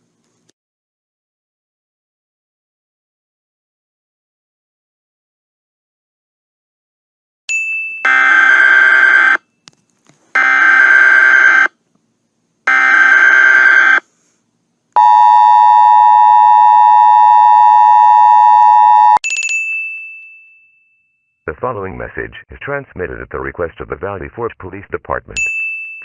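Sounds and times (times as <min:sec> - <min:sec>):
chime: 0:07.5 - 0:08.1, 0:19.2 - 0:21.4, 0:25.4 - 0:26.0
two-tone attention signal: 0:15.0 - 0:19.2.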